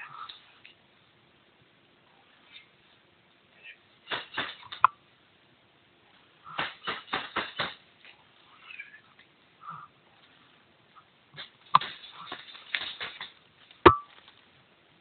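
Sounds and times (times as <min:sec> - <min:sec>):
airsoft rifle shots: 0:04.1 - 0:04.8, 0:06.6 - 0:07.8.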